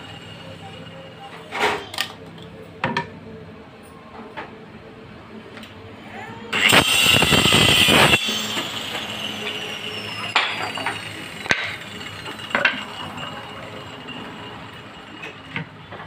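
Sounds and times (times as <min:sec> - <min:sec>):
faint high whine: 0:06.5 - 0:15.7
loud rasping burst: 0:06.6 - 0:15.0.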